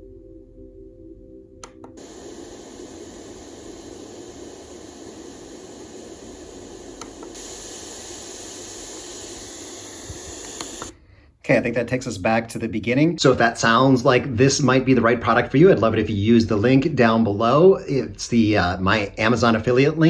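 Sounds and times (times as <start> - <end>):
low humming tone: 0.0 - 10.9
button click: 1.6 - 2.0
white noise hiss: 1.6 - 20.0.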